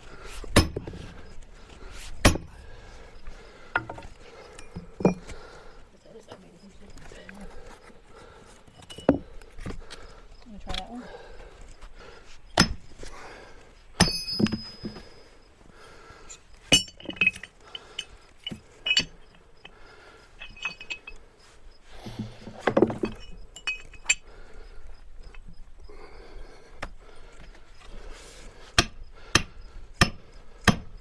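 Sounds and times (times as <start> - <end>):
maul striking steel wedges: 0.4 - 1.1, 2.2 - 2.6, 12.6 - 12.9, 14.0 - 15.0, 16.7 - 17.5, 28.8 - 30.9.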